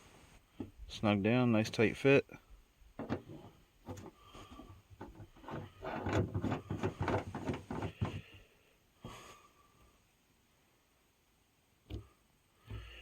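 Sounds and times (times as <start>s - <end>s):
hands handling antenna parts: 3.0s - 8.4s.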